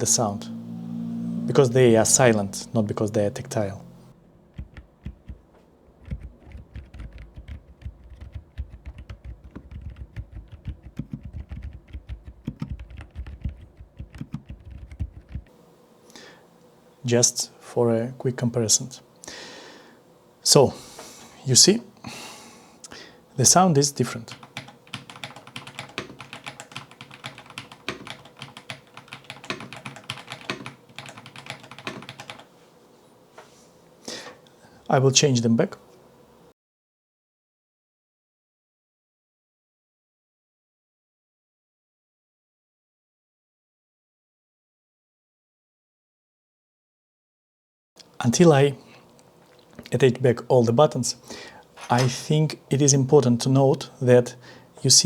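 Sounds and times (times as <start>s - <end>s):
mechanical keyboard key clacks: 24.6s - 32.4s.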